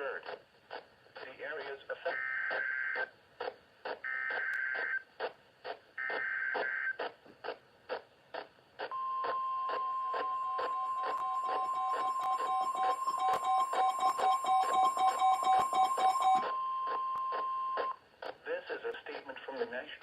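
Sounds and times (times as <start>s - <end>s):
alert data bursts: 8.9s - 18.0s
regular ticking pulse: 8.9s - 18.0s
steady attention tone: 8.9s - 18.0s.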